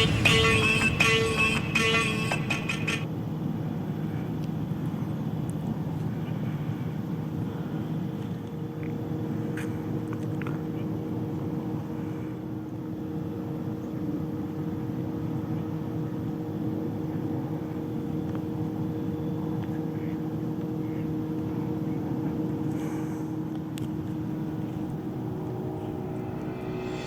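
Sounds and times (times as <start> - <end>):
mechanical drone: 0.0 - 3.0, 24.0 - 27.0.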